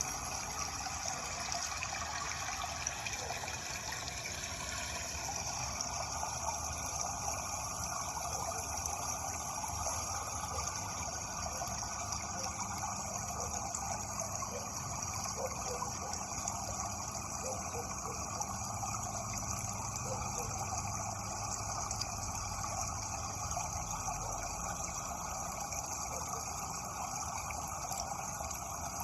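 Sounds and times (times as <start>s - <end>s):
running water flowing: 0.0s - 29.0s.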